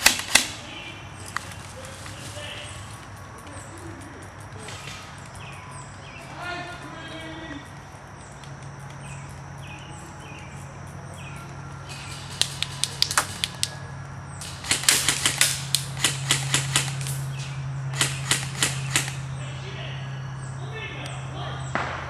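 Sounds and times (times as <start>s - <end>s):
airsoft guns firing: 0.0s - 3.0s, 11.9s - 13.8s, 14.4s - 19.6s, 21.6s - 22.0s
steady low hum: 0.0s - 22.0s.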